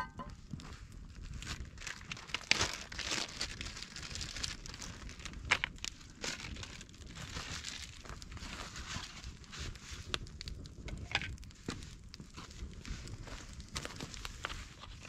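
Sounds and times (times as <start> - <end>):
packaging crinkling: 0.6 - 15.0
sharp clicks and crackles: 1.6 - 8.3.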